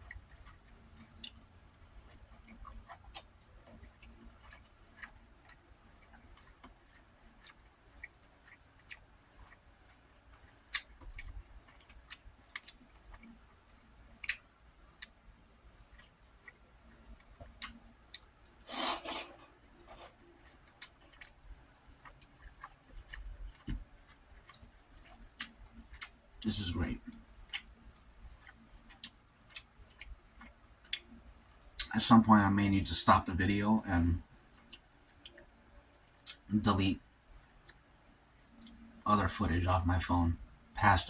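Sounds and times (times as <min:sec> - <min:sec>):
wet chewing mouth clicks: 0:14.2 - 0:15.2, 0:15.8 - 0:19.2, 0:19.8 - 0:26.2, 0:27.0 - 0:31.9.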